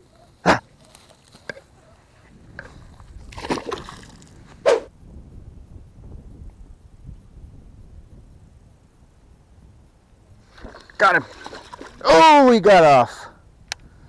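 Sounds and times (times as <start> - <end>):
water splashing: 2.6 - 4.9, 10.5 - 13.0
person exclaiming: 12.0 - 13.3.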